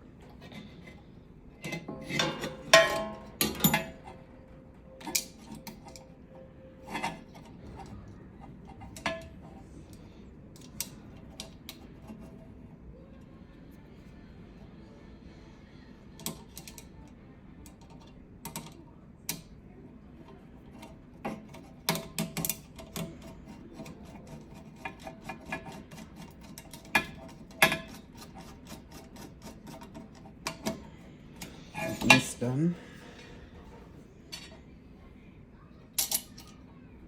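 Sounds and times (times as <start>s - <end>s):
screwdriver turning a screw: 20.8s - 30.8s.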